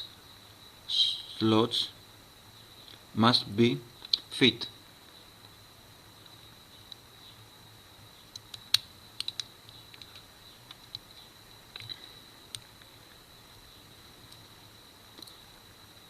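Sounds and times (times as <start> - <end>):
small sharp clicks and taps: 8.3 - 12.9.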